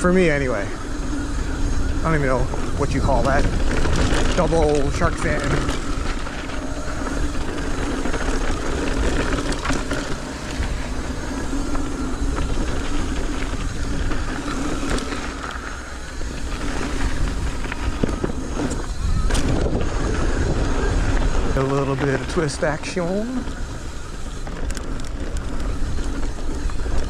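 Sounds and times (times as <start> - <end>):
bike clicks and rattles: 0.0 - 27.0
bike tyres rolling on dirt: 0.0 - 27.0.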